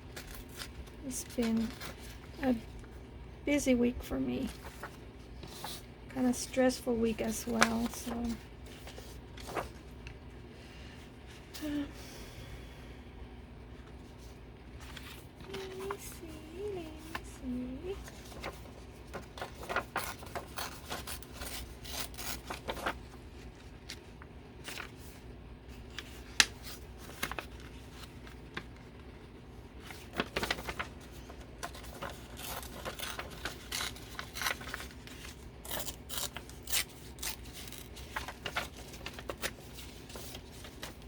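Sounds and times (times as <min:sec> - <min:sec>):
paper rustling: 0:00.1 - 0:03.0, 0:04.4 - 0:10.3, 0:13.8 - 0:41.0
scissor snips: 0:35.7 - 0:37.9.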